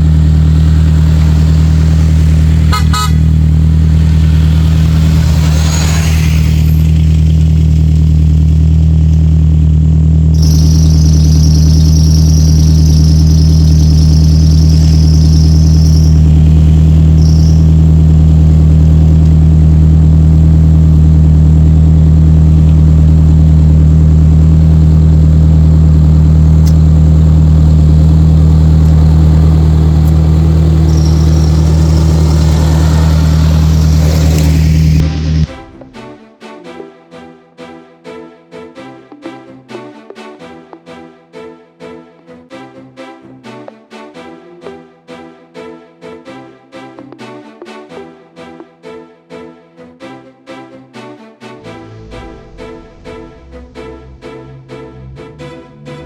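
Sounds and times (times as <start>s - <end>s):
high-pitched squeal: 0.0s - 8.7s, 10.3s - 20.4s, 26.3s - 35.9s, 51.6s - 56.0s
vehicle engine droning: 0.0s - 36.0s, 51.6s - 56.0s.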